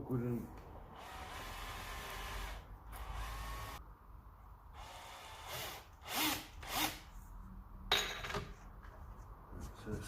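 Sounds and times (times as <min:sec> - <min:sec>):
power drill boring into wood: 0:01.0 - 0:03.8, 0:04.8 - 0:07.0.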